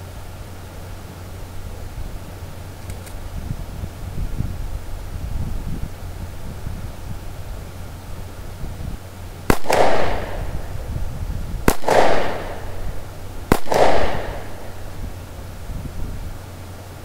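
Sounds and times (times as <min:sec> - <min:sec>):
pistol shots with echo: 0:09.5 - 0:10.9, 0:11.7 - 0:15.0.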